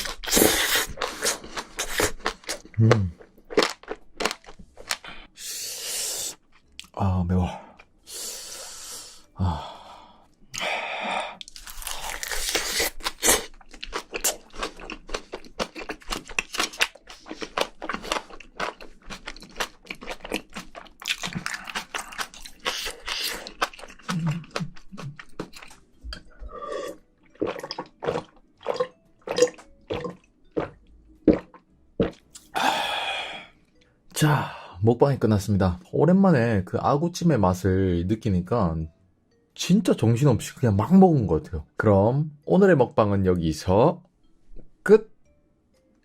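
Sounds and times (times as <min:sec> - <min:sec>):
close chewing and crunching: 0:00.0 - 0:05.4, 0:11.3 - 0:32.6.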